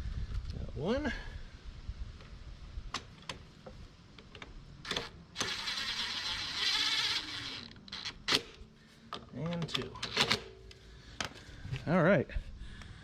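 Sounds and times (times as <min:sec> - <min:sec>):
power driver running: 0:04.8 - 0:08.5.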